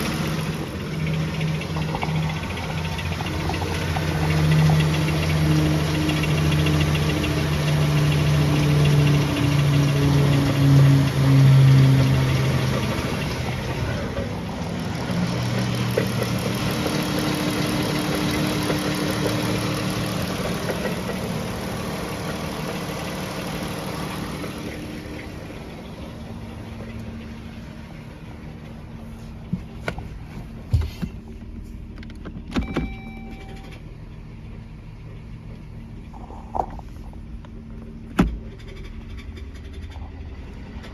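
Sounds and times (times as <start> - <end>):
car engine knocking: 0.0 - 40.9
short beep: 32.6 - 33.9.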